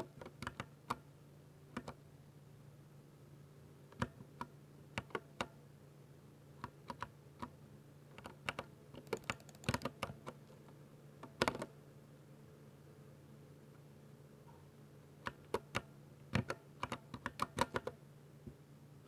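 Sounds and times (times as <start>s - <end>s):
mechanical keyboard typing: 0.1s - 1.0s, 8.2s - 10.4s, 15.3s - 17.9s.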